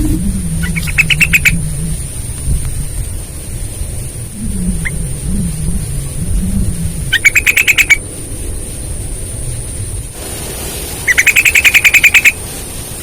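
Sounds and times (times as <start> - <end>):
bird calling rapid notes: 0.0 - 2.1, 4.4 - 8.0, 11.0 - 12.4
low rumble: 0.0 - 11.1.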